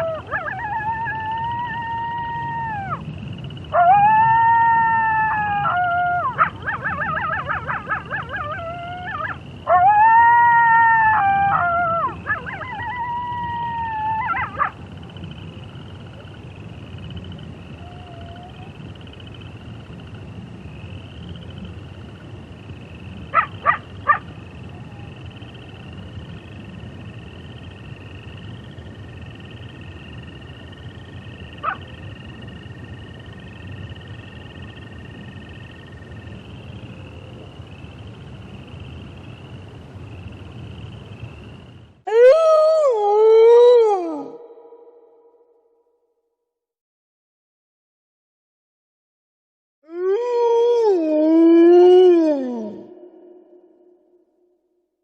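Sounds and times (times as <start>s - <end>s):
wolf howl: 0.0s - 3.0s, 3.7s - 14.8s, 17.8s - 18.7s, 42.1s - 45.4s, 49.9s - 54.2s.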